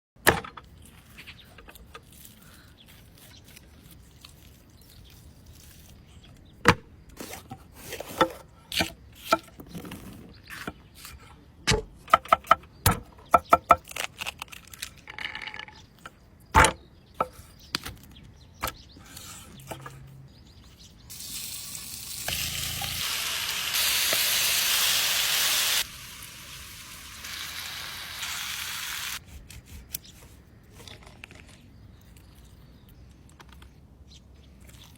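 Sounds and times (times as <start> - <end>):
food sizzling in a hot pan: 21.1 - 29.2.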